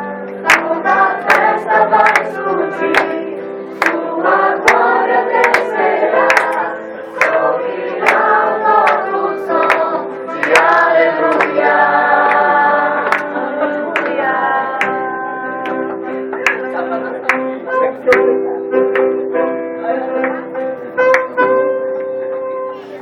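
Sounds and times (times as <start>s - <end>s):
group of voices singing: 0.0s - 17.4s
sharp hand claps: 0.5s - 3.2s, 3.8s - 4.0s, 4.6s - 11.7s, 12.3s - 13.3s, 14.0s - 14.2s, 16.4s - 17.5s, 18.1s - 18.3s, 18.9s - 19.1s, 21.1s - 21.4s.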